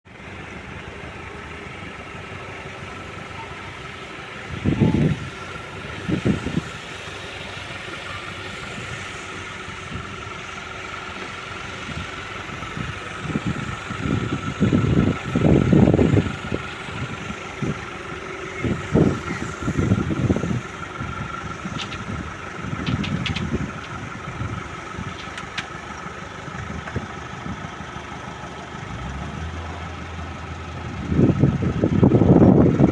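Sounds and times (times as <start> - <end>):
engine running with whine: 0.0 - 32.9
low rumbles: 0.1 - 32.9.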